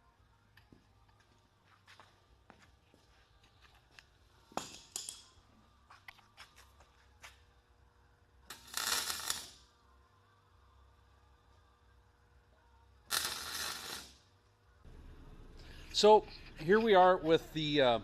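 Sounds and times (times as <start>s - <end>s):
welder hissing: 8.5s - 9.6s, 13.1s - 14.2s.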